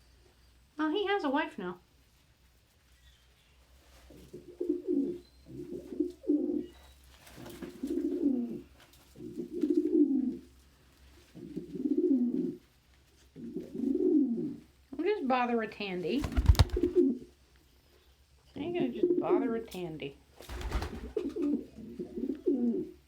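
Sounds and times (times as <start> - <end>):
pigeon cooing: 4.1 - 6.8, 7.4 - 10.5, 11.3 - 12.6, 13.4 - 14.7, 16.2 - 17.3, 20.6 - 23.0.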